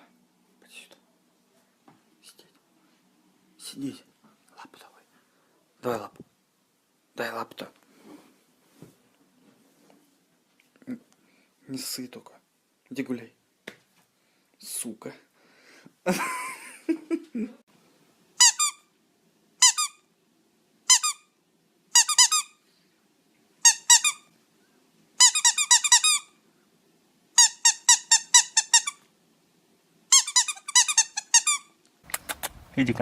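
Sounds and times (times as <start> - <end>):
dog's squeaky toy squeaking: 18.4 - 18.8, 19.6 - 20.0, 20.9 - 21.3, 22.0 - 22.6, 23.6 - 24.2, 25.2 - 26.3, 27.4 - 29.0, 30.1 - 32.6.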